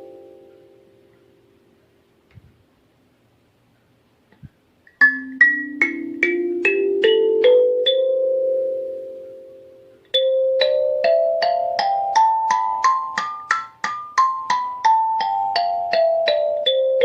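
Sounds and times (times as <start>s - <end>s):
kalimba notes plucked: 4.9s - 17.0s.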